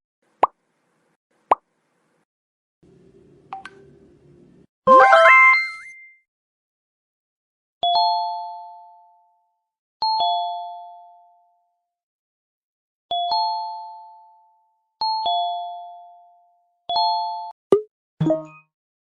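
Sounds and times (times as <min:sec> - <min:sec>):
two-tone doorbell chime: 0:07.8 - 0:09.4, 0:10.0 - 0:11.5, 0:13.1 - 0:17.5.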